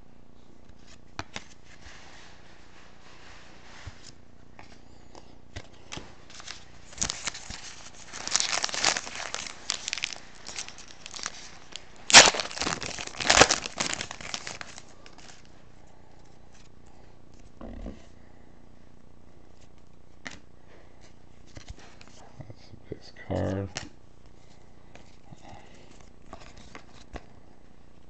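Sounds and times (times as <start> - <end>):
wrapper crinkling and tearing: 6.3 - 15.5.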